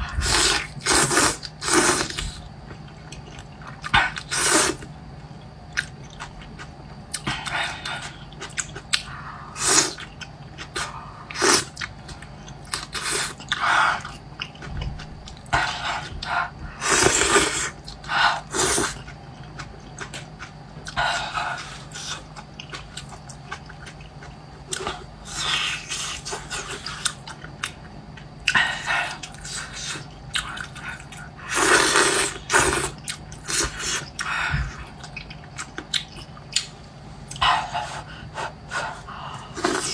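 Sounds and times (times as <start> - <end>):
noodles slurped and chewed: 0.1 - 4.9, 15.3 - 27.8, 28.4 - 34.3, 38.7 - 39.9.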